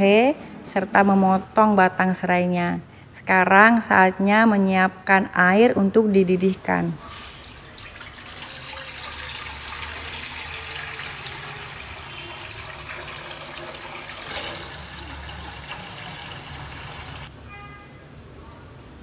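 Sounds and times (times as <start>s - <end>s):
water pouring into a pot: 7.0s - 17.3s.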